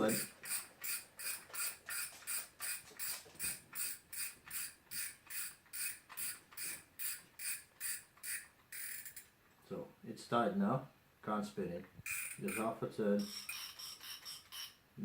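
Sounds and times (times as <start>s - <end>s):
fishing reel clicking: 0.0s - 3.1s, 3.8s - 9.2s, 12.1s - 14.7s.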